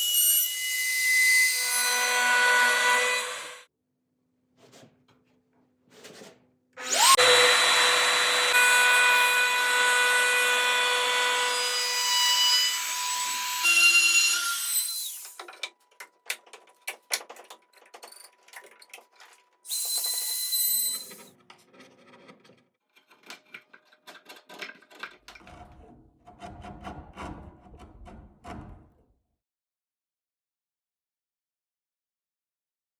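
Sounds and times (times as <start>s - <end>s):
woodworking power tool whining: 0.1s - 3.6s, 6.8s - 15.8s, 19.6s - 21.4s
wood knocking and rubbing: 21.1s - 29.0s.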